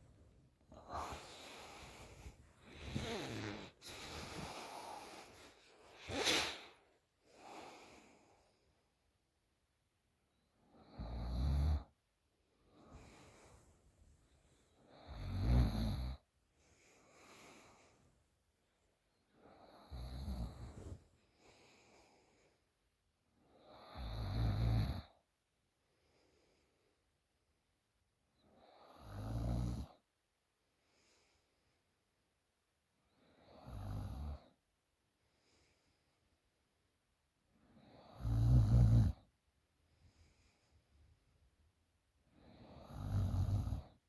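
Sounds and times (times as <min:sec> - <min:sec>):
woman snoring: 0:00.7 - 0:06.7, 0:10.8 - 0:11.9, 0:14.9 - 0:16.2, 0:19.6 - 0:21.0, 0:23.7 - 0:25.1, 0:38.0 - 0:39.2, 0:42.4 - 0:44.0.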